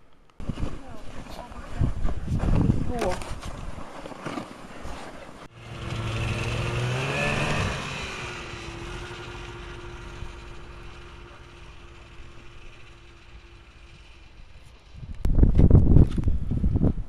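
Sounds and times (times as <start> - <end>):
vehicle engine revving: 5.5 - 14.8.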